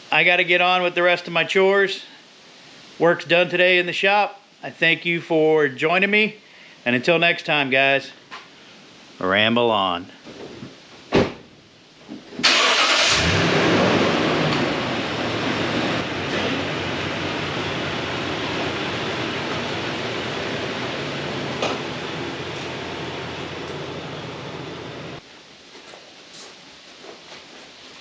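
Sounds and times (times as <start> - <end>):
vehicle engine starting and running: 12.4 - 25.2.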